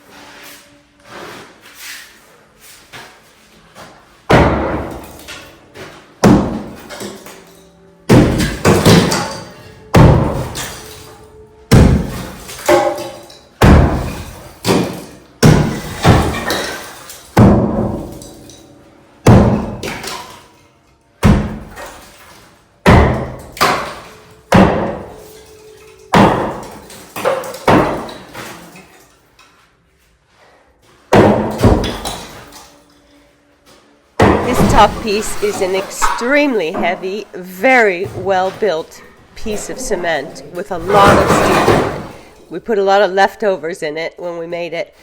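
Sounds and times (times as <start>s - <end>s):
sledgehammer striking cement: 4.3s - 5.3s, 6.2s - 7.2s, 8.1s - 11.0s, 11.7s - 18.5s, 19.2s - 20.3s, 21.2s - 25.5s, 26.1s - 28.8s, 31.1s - 32.6s, 34.2s - 36.3s, 40.8s - 42.3s.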